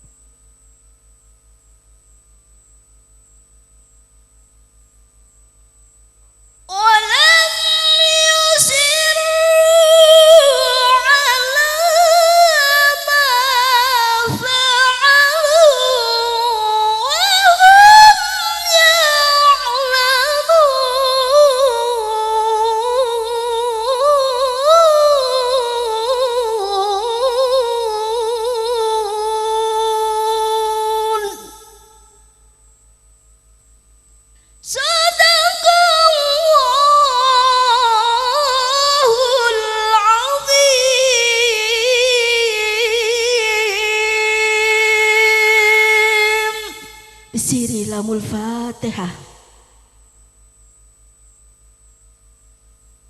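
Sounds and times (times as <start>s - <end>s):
person reciting melodically: 6.7s - 31.9s, 34.7s - 49.5s.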